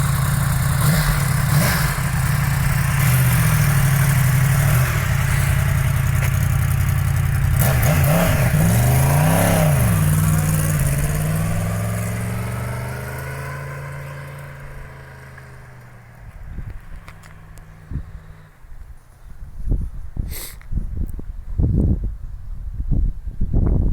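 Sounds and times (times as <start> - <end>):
motorcycle engine revving: 0.0 - 18.4.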